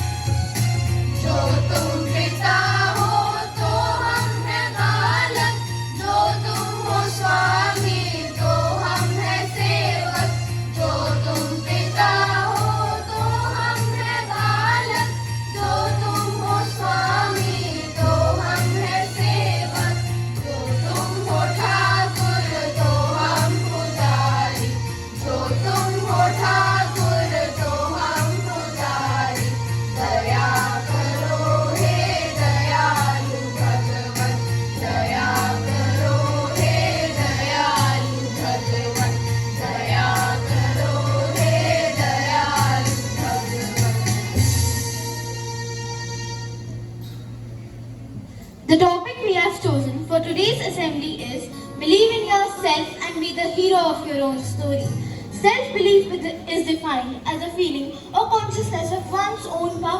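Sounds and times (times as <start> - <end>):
musical accompaniment with steady beat: 0.0 - 48.0
students singing a prayer in chorus: 1.2 - 44.3.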